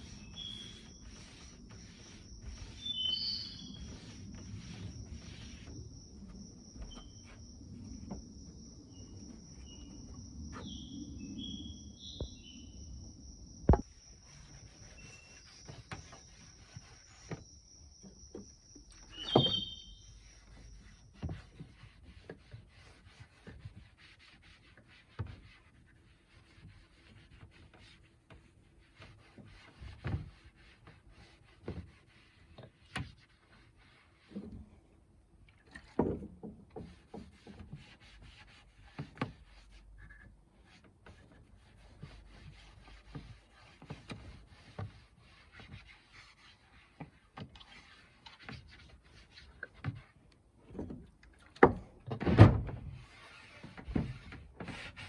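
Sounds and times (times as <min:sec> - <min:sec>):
wood knocking and rubbing: 0:00.0 - 0:10.8, 0:13.6 - 0:23.9, 0:35.7 - 0:55.0.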